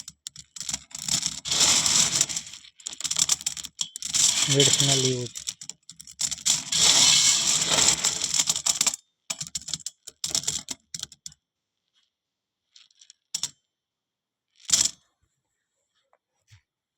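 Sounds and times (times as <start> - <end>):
dried fruits clicking and rattling: 0.0 - 11.4.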